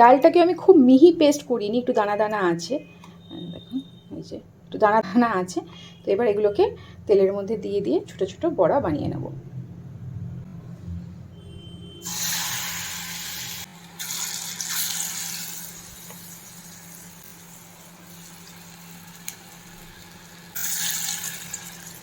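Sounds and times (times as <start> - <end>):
batter sizzling in hot oil: 12.0 - 22.0.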